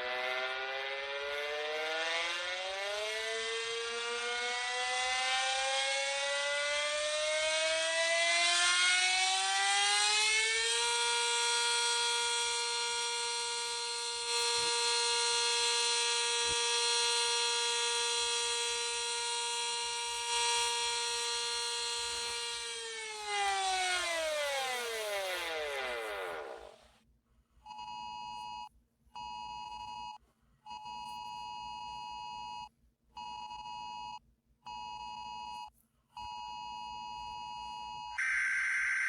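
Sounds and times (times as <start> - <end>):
reversed warning siren: 0.0 - 26.8, 38.2 - 39.0.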